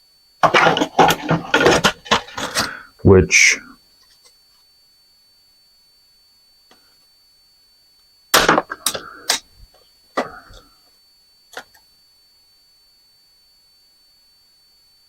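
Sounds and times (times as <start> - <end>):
plastic and steel parts clacking: 0.4 - 2.7.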